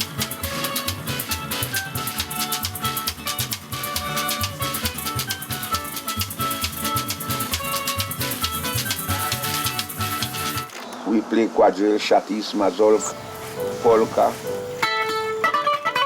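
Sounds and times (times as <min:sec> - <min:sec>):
bouncing bass line: 0:00.0 - 0:10.7
plucked-string melody: 0:00.0 - 0:10.7, 0:13.1 - 0:16.0
drums: 0:00.0 - 0:10.8
maracas shaking: 0:00.0 - 0:10.8.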